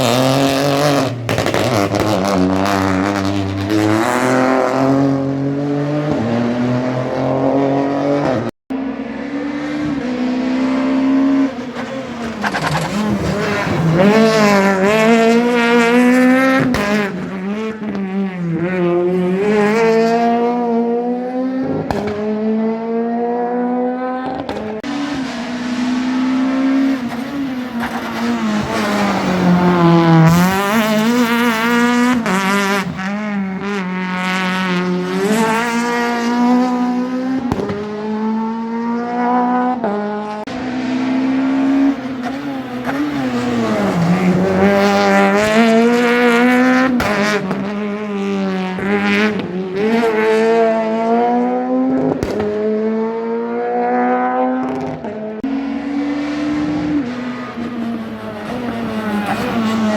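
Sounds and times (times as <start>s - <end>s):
rally car engines revving: 0.0s - 59.9s.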